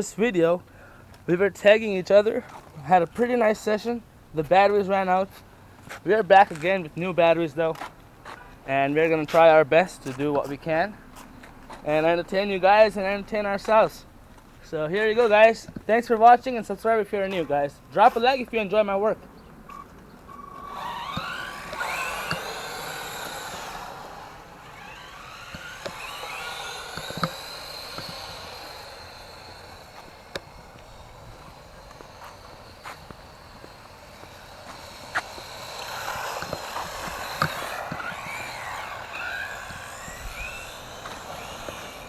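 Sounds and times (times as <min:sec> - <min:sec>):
electric motors whining: 0:19.8 - 0:42.0
toy trucks clicking over ground: 0:19.8 - 0:42.0.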